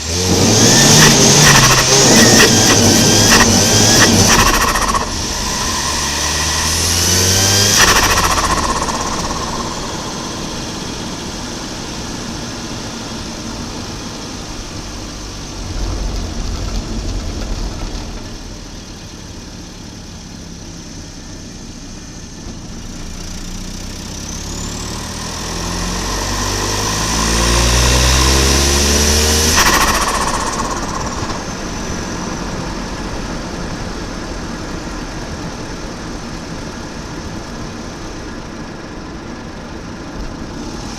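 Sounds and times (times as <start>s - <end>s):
car engine revving: 0.0s - 19.5s, 23.0s - 34.7s
turbo compressor flutter: 0.4s - 12.0s, 24.9s - 33.4s
turbo whistle: 0.7s - 11.5s, 24.9s - 32.8s.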